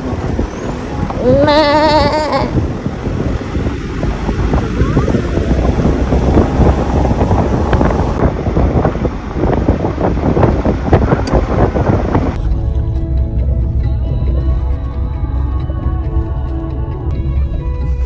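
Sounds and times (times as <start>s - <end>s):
wind buffeting microphone: 0.0s - 12.4s.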